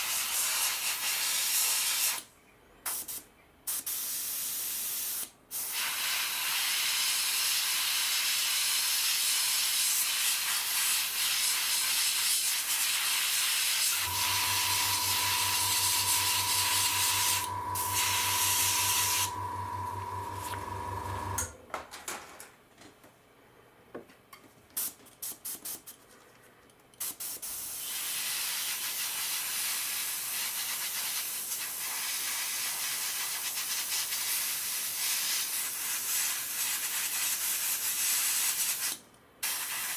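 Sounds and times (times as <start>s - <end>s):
airbrush spraying hiss: 10.4s - 20.2s
compressor motor humming: 14.0s - 21.6s.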